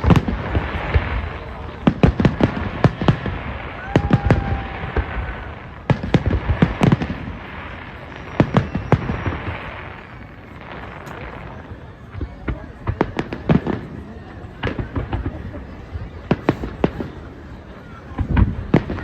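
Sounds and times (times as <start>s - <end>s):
fireworks bangs: 0.0s - 19.0s
fireworks crackling: 0.0s - 19.0s
faint firework whistle: 2.8s - 13.8s.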